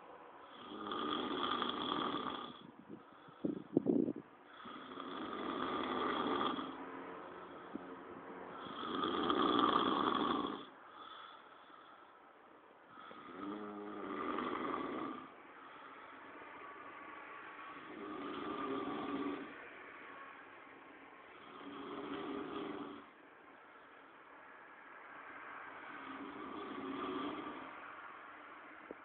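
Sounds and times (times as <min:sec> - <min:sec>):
person snoring loudly: 0:00.5 - 0:02.7, 0:04.5 - 0:06.8, 0:08.5 - 0:11.2, 0:13.0 - 0:15.4, 0:17.8 - 0:19.6, 0:21.4 - 0:23.1, 0:26.0 - 0:27.8.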